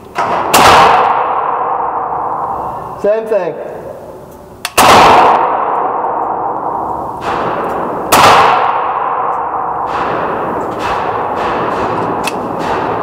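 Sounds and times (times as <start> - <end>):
rifle shot echoing: 0.2 - 2.9, 4.6 - 13.0.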